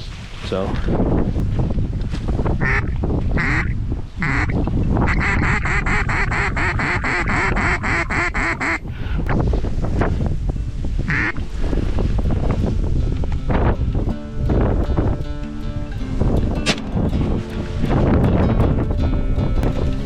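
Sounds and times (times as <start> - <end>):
wind rumbling: 0.0 - 20.0
duck quacking: 2.6 - 8.8, 11.1 - 11.4.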